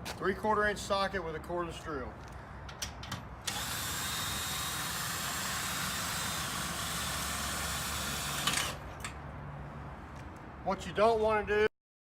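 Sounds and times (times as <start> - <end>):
cordless drill running: 3.4 - 8.8
drill click: 3.4 - 9.2.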